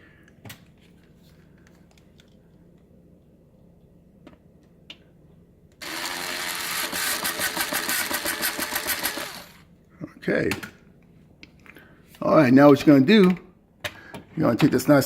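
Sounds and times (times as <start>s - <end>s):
power screwdriver whirring: 5.8s - 9.6s.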